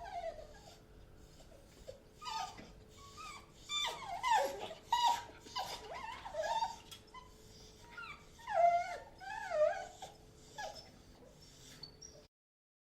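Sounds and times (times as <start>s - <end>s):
dogs whining and yipping: 0.0s - 12.3s.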